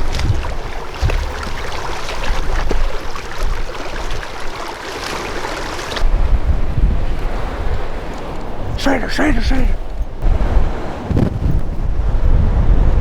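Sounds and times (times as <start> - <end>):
storm wind gusting on microphone: 5.9 - 13.0.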